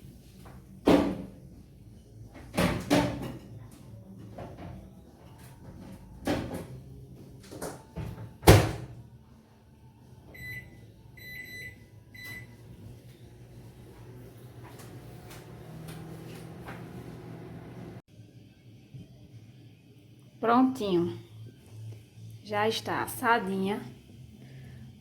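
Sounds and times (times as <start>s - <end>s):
microwave beeping: 10.3s - 18.0s.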